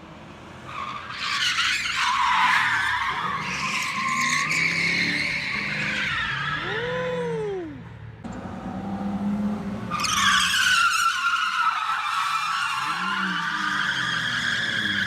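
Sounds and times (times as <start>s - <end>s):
tyres squealing: 0.7s - 6.8s, 9.9s - 15.0s.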